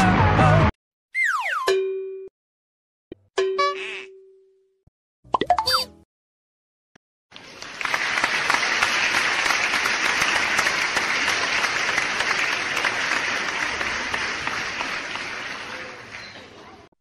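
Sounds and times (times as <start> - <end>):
crowd clapping: 7.3 - 17.0.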